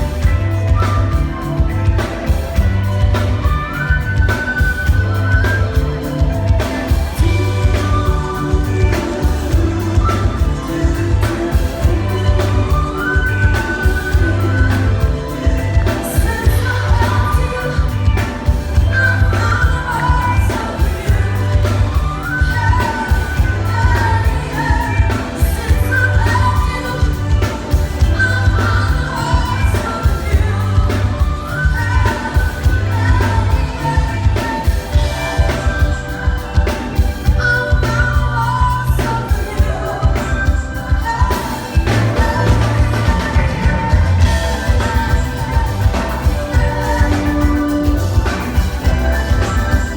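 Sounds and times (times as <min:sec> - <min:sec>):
live band playing pop dance music: 0:00.0 - 0:49.9
pulsing bass beat: 0:00.0 - 0:49.9
woman singing: 0:00.0 - 0:49.9.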